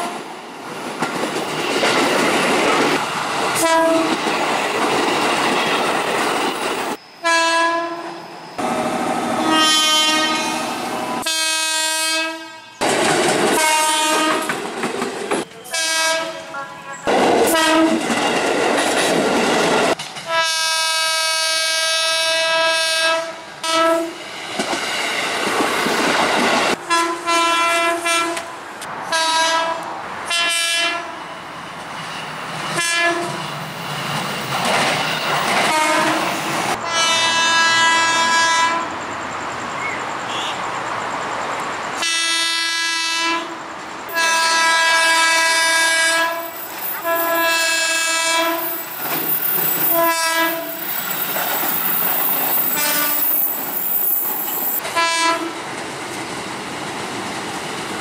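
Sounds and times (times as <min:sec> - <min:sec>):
trains running on rails: 0:00.0 - 0:58.0
electric train horn blasts: 0:03.6 - 0:04.2, 0:07.2 - 0:08.8, 0:09.4 - 0:12.8, 0:13.6 - 0:14.5, 0:15.6 - 0:18.0, 0:20.3 - 0:24.2, 0:26.9 - 0:28.5, 0:29.1 - 0:31.2, 0:32.8 - 0:33.4, 0:35.7 - 0:39.0, 0:42.0 - 0:48.8, 0:49.8 - 0:50.8, 0:52.7 - 0:53.4, 0:54.9 - 0:55.6.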